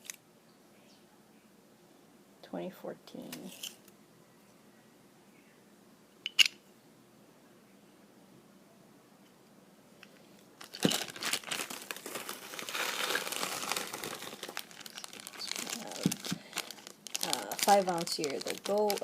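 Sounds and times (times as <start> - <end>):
packaging crinkling: 10.6 - 19.0.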